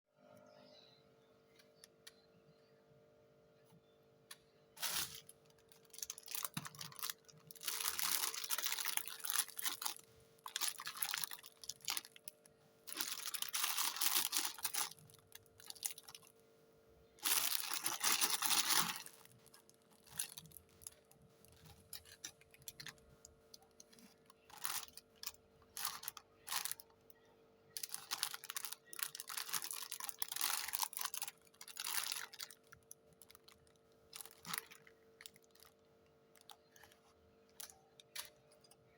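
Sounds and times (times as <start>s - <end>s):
faint steady hum: 0.2s - 38.9s
packaging crinkling and tearing: 4.8s - 16.3s, 17.2s - 26.9s, 27.7s - 37.0s.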